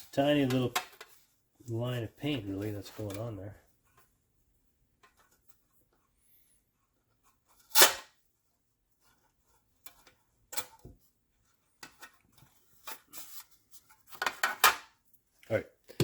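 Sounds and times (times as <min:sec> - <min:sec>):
tape and parts rustling: 0:00.0 - 0:04.2, 0:08.9 - 0:15.4
masking tape pulled off roll: 0:07.7 - 0:08.2.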